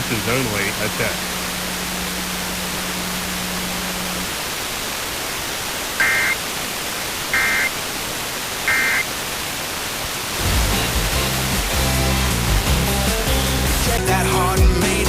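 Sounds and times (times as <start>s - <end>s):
radio hiss: 0.0s - 14.0s
two-tone digital data bursts: 6.0s - 6.4s, 7.3s - 7.7s, 8.7s - 9.1s.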